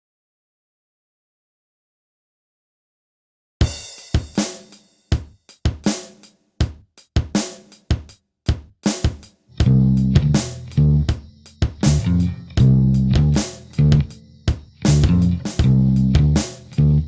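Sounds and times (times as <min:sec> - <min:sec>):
drum kit with cymbal crashes: 0:03.6 - 0:16.9
bass guitar: 0:09.5 - 0:17.0.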